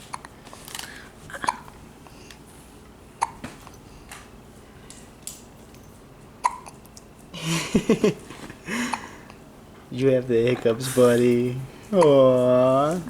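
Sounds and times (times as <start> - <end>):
baby hiccuping: 1.3 - 1.8, 3.2 - 3.5, 6.4 - 6.8.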